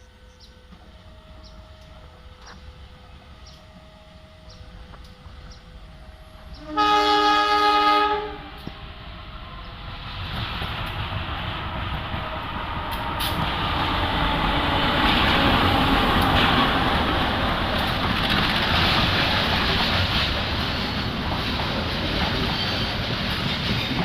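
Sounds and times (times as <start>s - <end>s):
approaching train running: 0.0s - 24.0s
locomotive horn blast: 6.2s - 8.8s.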